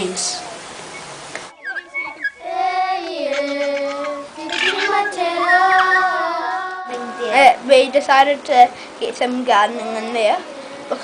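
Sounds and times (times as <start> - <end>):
child singing slow melody: 1.8 - 7.7.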